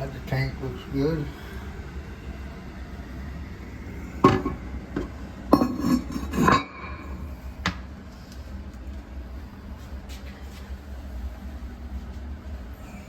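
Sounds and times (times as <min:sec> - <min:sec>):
ceramic lid clinking: 0:05.6 - 0:07.1.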